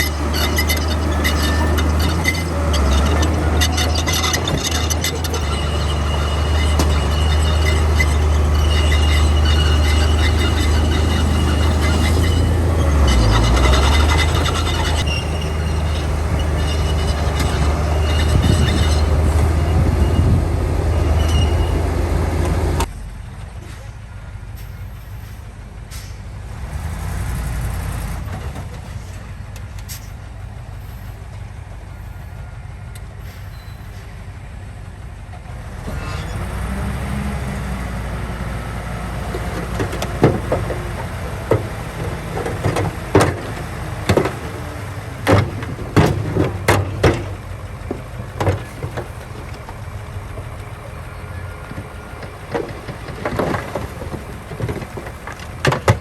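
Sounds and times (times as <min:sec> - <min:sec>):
sharp irregular clanks and knocks: 0:00.0 - 0:20.3, 0:39.2 - 0:50.8, 0:51.4 - 0:56.0
bulldozer diesel engine running: 0:00.0 - 0:56.0.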